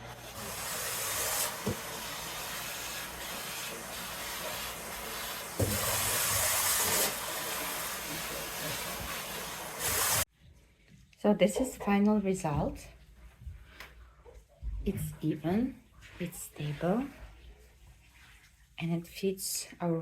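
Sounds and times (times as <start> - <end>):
vacuum cleaner running: 0.0 - 10.2.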